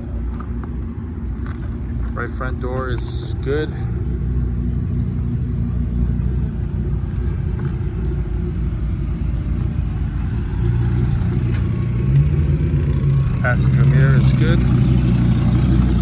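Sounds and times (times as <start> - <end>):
steady low rumble: 0.0 - 16.0.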